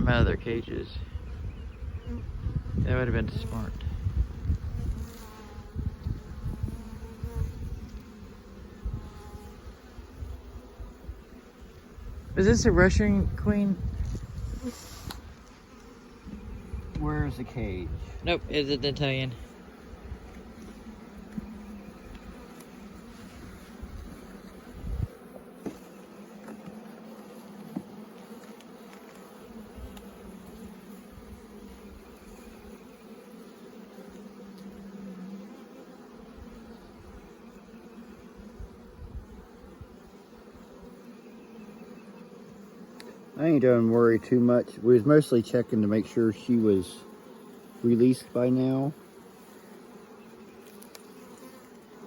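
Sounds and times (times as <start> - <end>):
honey bees buzzing: 0.0 - 52.0
thump: 25.6 - 25.8.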